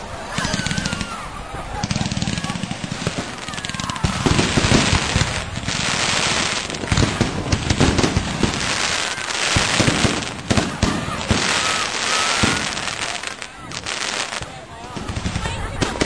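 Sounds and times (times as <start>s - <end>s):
fireworks crackling: 0.0s - 16.0s.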